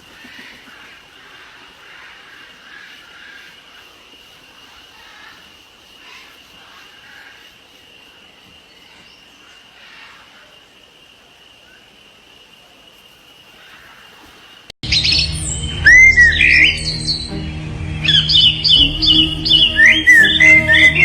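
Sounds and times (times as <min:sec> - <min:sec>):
high insect drone: 0:00.0 - 0:21.0
birds calling: 0:13.6 - 0:21.0.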